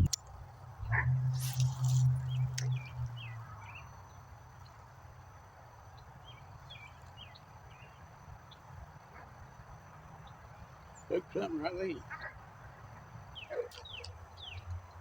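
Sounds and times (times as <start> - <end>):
low hum: 0.0 - 5.0
faint outdoor background: 0.0 - 15.0
small birds chirping: 0.0 - 15.0.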